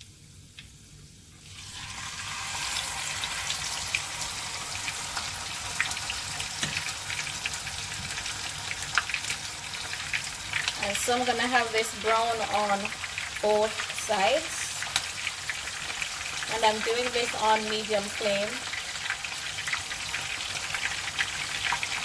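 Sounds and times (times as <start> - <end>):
fish frying in hot oil: 0.0 - 22.0
oil crackling and popping: 0.4 - 22.0.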